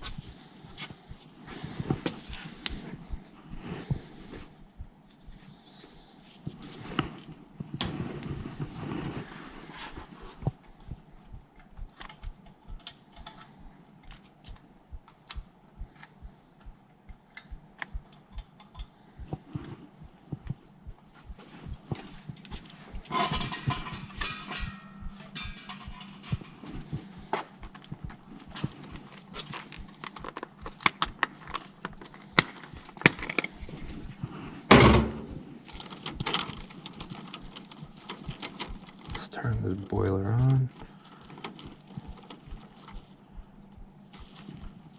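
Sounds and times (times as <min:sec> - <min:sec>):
light irregular clicks: 0:10.4 - 0:34.2
tools clicking and knocking: 0:11.6 - 0:14.6.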